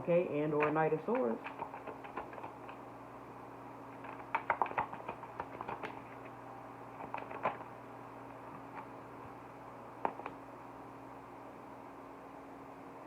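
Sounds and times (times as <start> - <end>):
steady low hum: 0.0 - 13.0
cards clicking and tapping: 0.6 - 2.8, 3.9 - 6.3, 7.0 - 7.7, 10.0 - 10.4.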